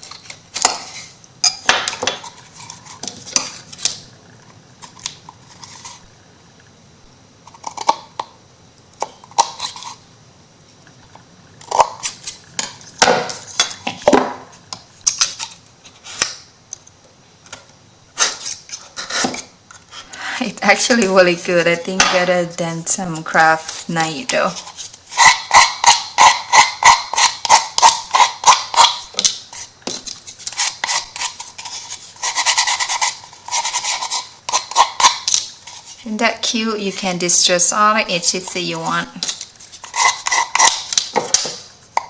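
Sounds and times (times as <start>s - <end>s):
knife scraping and clicking on wood: 9.0s - 10.0s, 23.0s - 36.1s, 39.2s - 42.0s.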